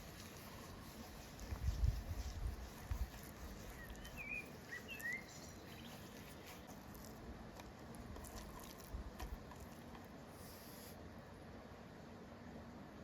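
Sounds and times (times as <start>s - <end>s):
short bird chirps: 3.8s - 6.1s.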